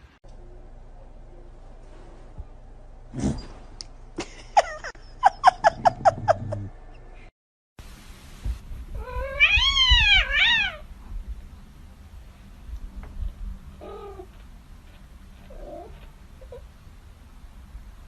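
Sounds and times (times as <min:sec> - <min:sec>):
cat meowing: 0:09.0 - 0:10.9.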